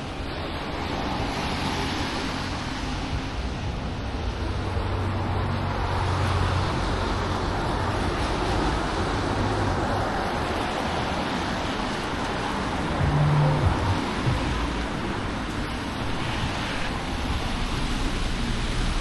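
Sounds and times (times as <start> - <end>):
passing cars: 0.0 - 19.0
vehicle approaching: 11.8 - 15.8
low engine hum: 11.8 - 19.0.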